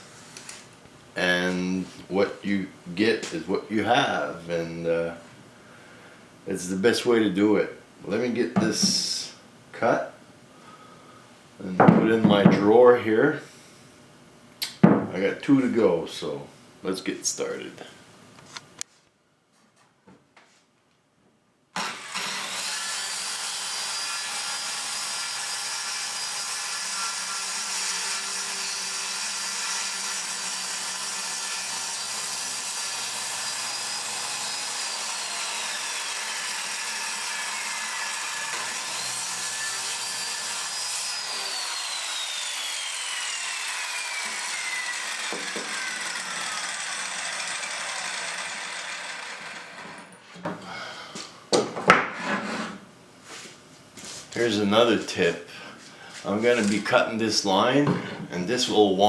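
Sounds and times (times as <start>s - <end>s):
circular saw cutting plywood: 21.8s - 50.2s.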